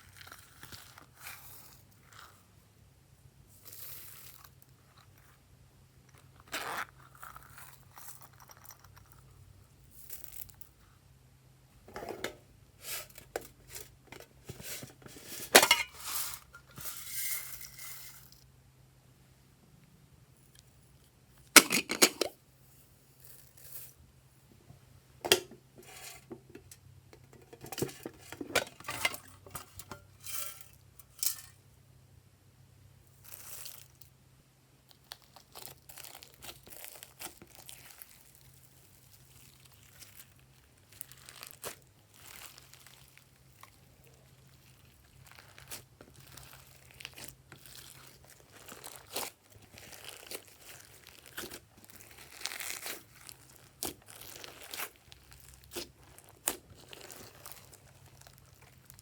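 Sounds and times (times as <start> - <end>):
slime crackling and popping: 34.9 - 59.0.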